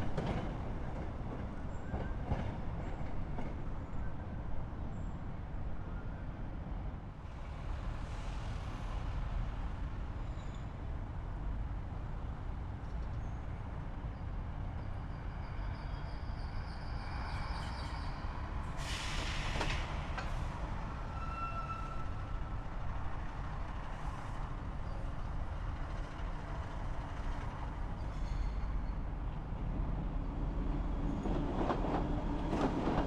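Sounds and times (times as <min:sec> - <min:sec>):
traffic and trains rumbling: 0:00.0 - 0:33.0
faint high squeals: 0:21.0 - 0:22.5.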